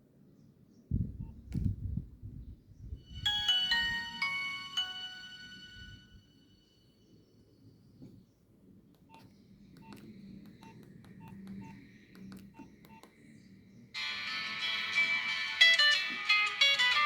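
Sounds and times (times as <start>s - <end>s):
phone ringtone: 3.2s - 6.6s, 14.0s - 17.0s
phone key beeps and clicks: 9.1s - 13.2s.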